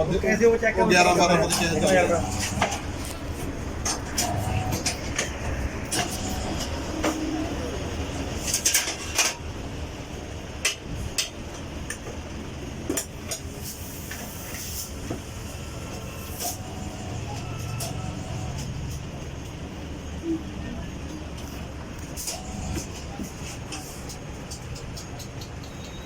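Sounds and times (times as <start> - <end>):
steady background noise: 0.0 - 26.0.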